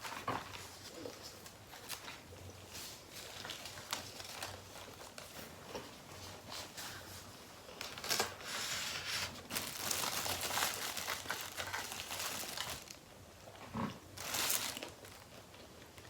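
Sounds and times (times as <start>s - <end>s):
handling food: 0.0s - 13.1s, 13.8s - 16.0s.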